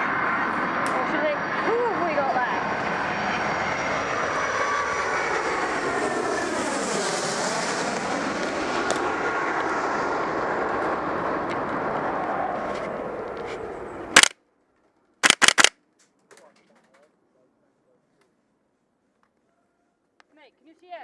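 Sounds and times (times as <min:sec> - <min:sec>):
light aircraft engine droning: 0:00.0 - 0:14.3
airsoft rifle shots: 0:14.2 - 0:14.4, 0:15.2 - 0:15.8
sharp crack: 0:14.2 - 0:14.4, 0:15.2 - 0:15.8.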